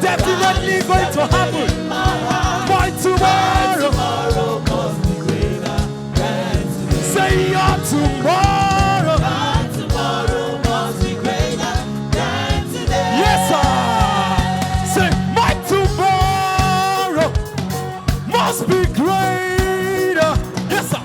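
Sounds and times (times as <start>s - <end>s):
person singing gospel: 0.0s - 17.5s, 18.2s - 21.0s
band with steady drum beat: 0.0s - 21.0s.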